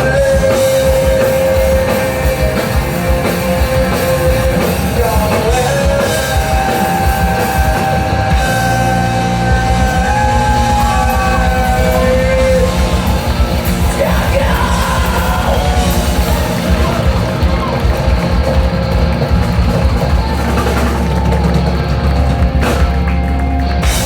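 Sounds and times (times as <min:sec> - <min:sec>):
loud rock band playing: 0:00.0 - 0:24.0
shouted vocals: 0:03.8 - 0:18.5.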